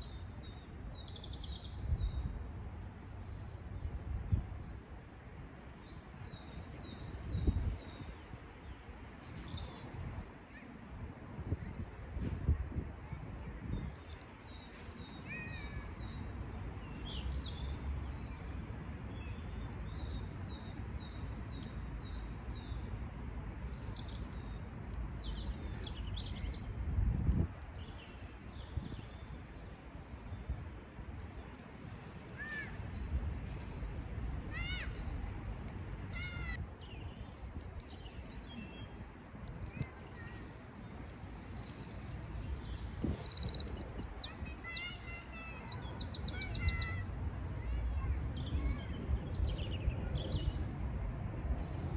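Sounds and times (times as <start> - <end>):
birds calling and chirping: 30.3 - 50.6.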